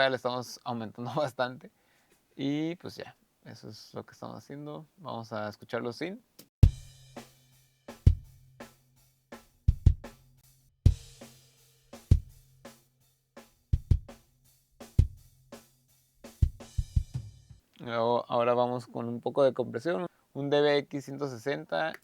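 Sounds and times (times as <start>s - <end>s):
snare drum: 6.6s - 8.8s, 9.4s - 10.3s, 10.9s - 12.8s, 13.4s - 14.2s, 14.8s - 17.5s.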